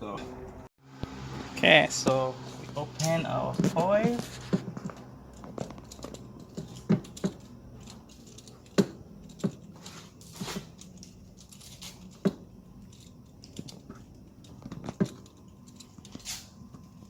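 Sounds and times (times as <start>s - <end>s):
tools clicking on engine parts: 2.1s - 17.0s.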